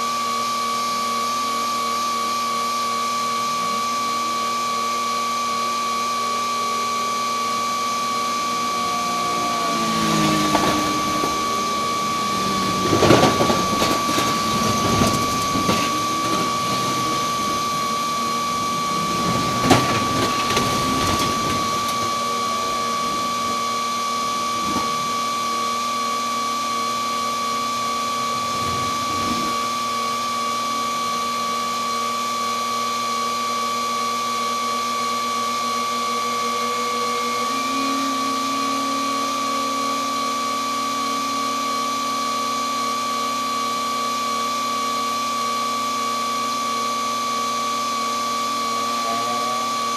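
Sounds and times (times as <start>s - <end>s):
high-pitched mechanical whine: 0.0s - 49.9s
rough rumbling noise: 7.7s - 25.8s, 27.6s - 31.1s.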